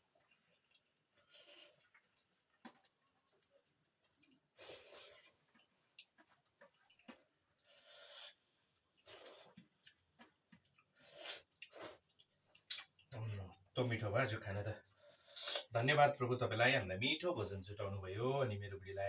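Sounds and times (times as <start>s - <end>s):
eating sounds: 0.0s - 16.2s
faint mouth clicks: 7.8s - 13.2s, 15.3s - 15.7s.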